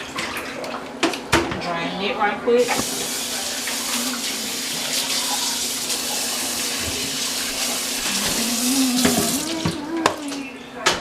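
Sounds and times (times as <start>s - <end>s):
water rushing into sink: 2.6s - 10.4s.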